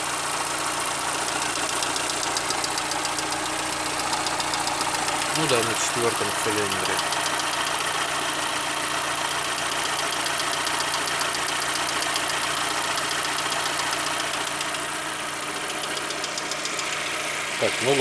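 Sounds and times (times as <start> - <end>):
car engine idling: 0.0 - 18.0
fast even valve ticking: 1.4 - 8.1.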